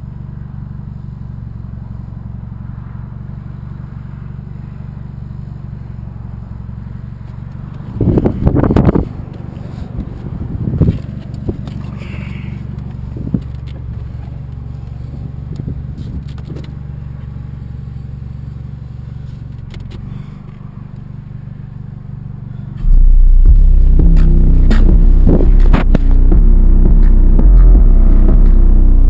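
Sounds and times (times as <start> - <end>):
deep bass line from subwoofers: 6.0 - 16.2, 22.6 - 29.0
loud deep bass drop: 22.8 - 29.0.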